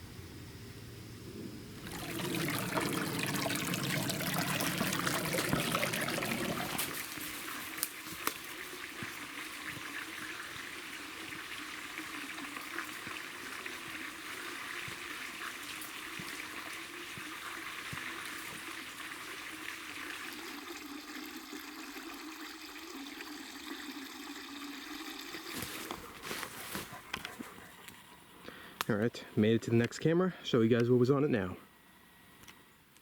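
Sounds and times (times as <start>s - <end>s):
water flowing over rocks: 1.8s - 21.4s.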